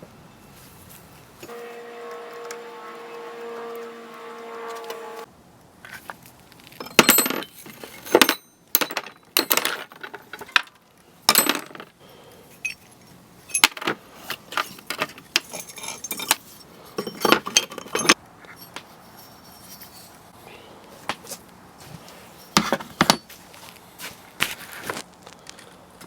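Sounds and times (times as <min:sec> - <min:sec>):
metal parts clinking and scraping: 0:06.6 - 0:20.2, 0:22.3 - 0:23.4.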